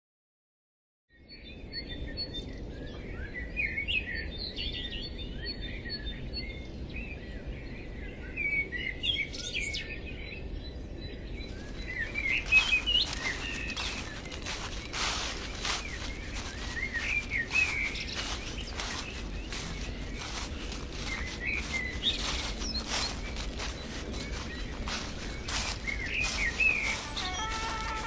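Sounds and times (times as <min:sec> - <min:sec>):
songbirds chirping and singing: 0:01.1 - 0:28.0
steady low rumble: 0:01.5 - 0:28.0
crackles and rustles: 0:11.5 - 0:28.0.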